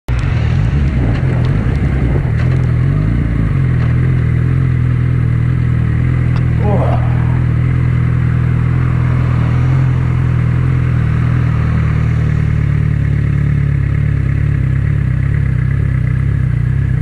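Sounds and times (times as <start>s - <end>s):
motorcycle engine running: 0.1s - 17.0s.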